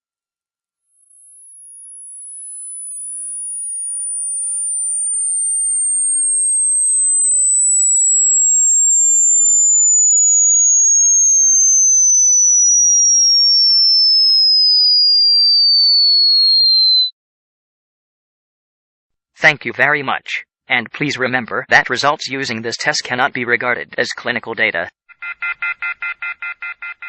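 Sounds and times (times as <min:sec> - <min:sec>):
high tone sliding lower: 0:01.4 - 0:17.1.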